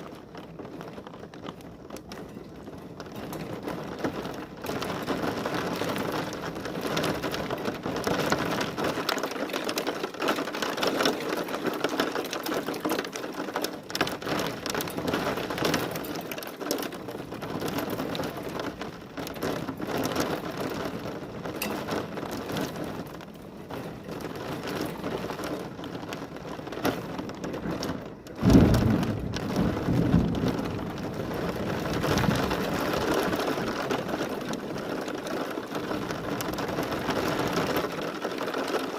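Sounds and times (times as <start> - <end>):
heavy rain pattering: 0.0 - 38.9
loud thunderclap rumbling: 26.6 - 37.6.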